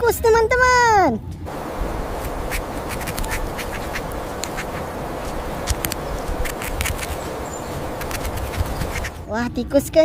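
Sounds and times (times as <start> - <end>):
running water hissing: 1.5 - 9.3.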